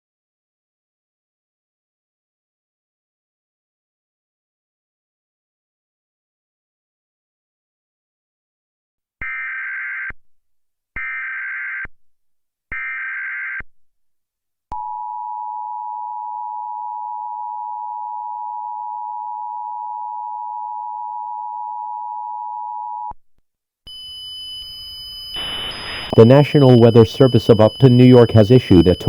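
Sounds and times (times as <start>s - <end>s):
steady two-tone attention signal: 23.9s - 29.0s
warbling data bursts: 25.4s - 29.0s.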